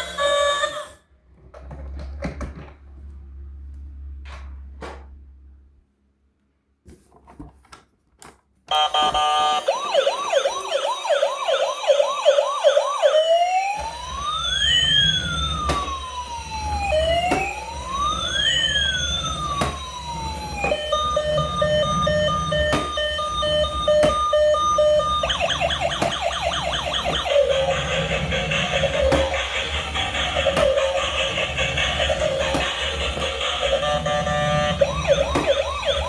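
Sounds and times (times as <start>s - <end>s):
electronic police siren: 0.0s - 1.0s, 8.7s - 36.0s.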